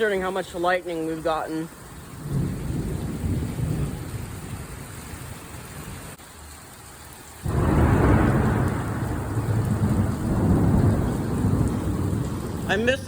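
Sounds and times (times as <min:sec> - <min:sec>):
heavy rain: 0:00.0 - 0:13.0
thunder rumbling: 0:02.0 - 0:06.2, 0:07.4 - 0:13.0.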